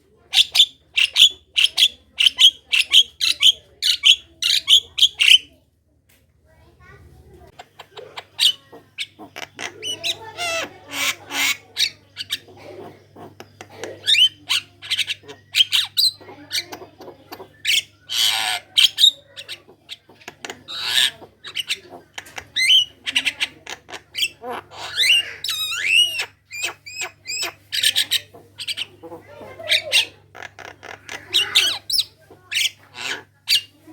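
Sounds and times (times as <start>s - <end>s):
myna singing harsh squawks: 22.6s - 33.7s.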